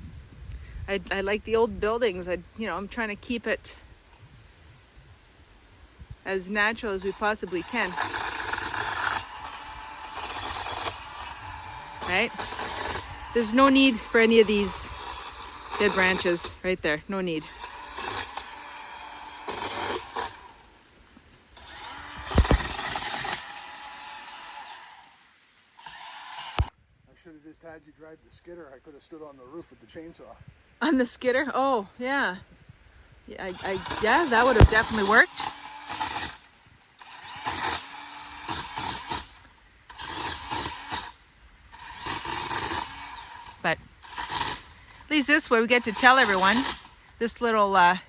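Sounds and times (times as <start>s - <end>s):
pole saw motor whine: 6.9s - 16.6s, 21.6s - 25.2s, 25.8s - 26.7s, 33.4s - 47.9s
heavy thumps: 22.2s - 23.4s.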